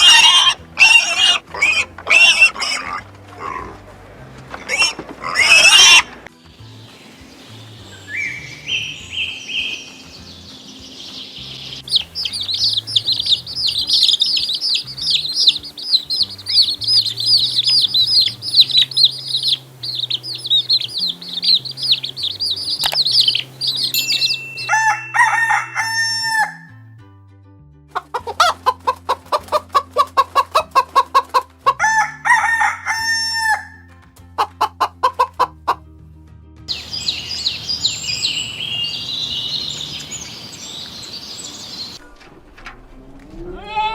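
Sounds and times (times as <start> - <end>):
hens clucking: 0.0 - 3.9, 4.5 - 6.3, 11.9 - 24.0, 28.0 - 33.7, 34.4 - 35.8
chicks peeping: 11.0 - 26.5, 28.0 - 31.4, 36.7 - 42.0.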